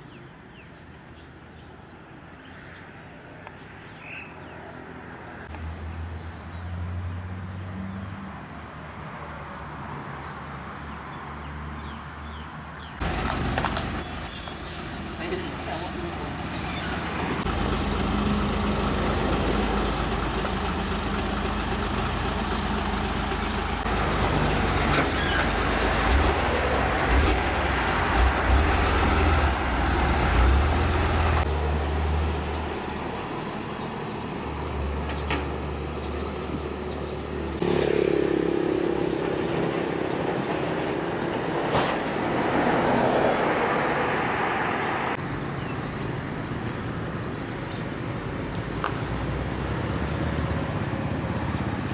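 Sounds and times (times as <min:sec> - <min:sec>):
vehicle engine running: 0:13.0 - 0:31.6.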